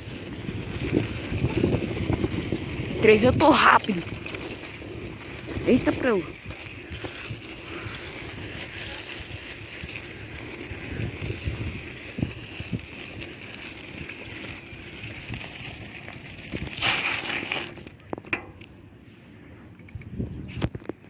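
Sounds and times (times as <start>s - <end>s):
bicycle tyre skid: 0.0s - 18.1s
bicycle tyre rolling: 0.0s - 21.0s.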